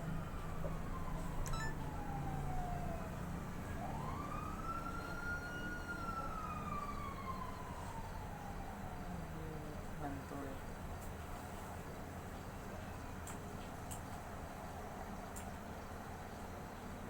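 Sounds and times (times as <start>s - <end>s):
wailing siren: 0.0s - 9.5s.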